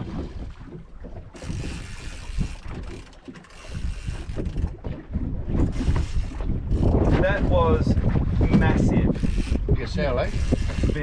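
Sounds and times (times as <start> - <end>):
wind buffeting microphone: 0.0 - 11.0
fishing reel gears clicking: 1.3 - 4.8, 5.7 - 7.0, 9.1 - 11.0.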